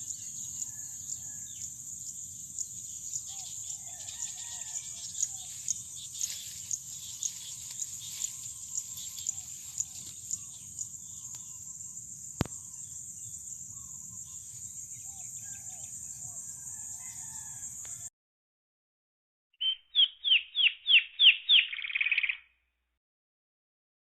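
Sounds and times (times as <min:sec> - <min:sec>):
high insect drone: 0:00.0 - 0:18.0
birds chirping: 0:02.0 - 0:16.0.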